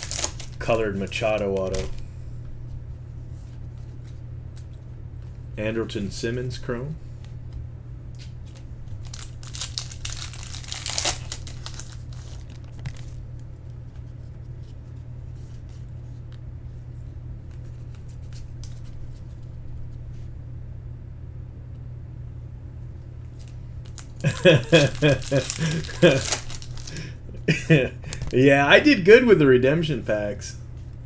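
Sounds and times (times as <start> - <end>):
foil wrappers tearing and crinkling: 0.0 - 2.0, 8.4 - 13.2, 23.4 - 27.1
steady low hum: 0.0 - 31.0.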